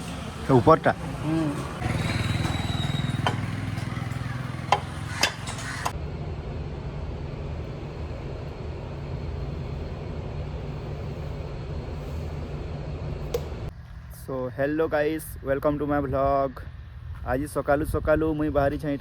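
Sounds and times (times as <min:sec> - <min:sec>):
motorcycle engine running: 0:00.0 - 0:12.5
sharp metallic clicks: 0:02.0 - 0:06.0.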